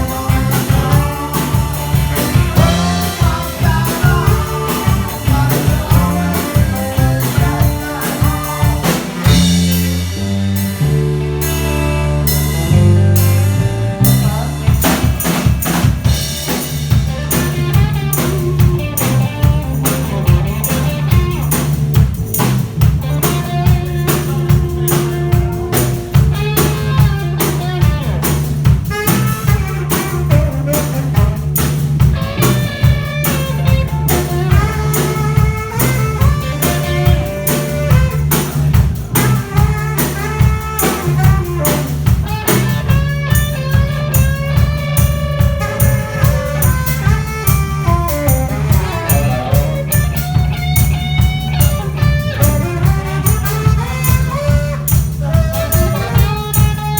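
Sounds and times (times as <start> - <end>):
drum kit beat: 0.0 - 56.9
live rock band playing: 0.0 - 56.9.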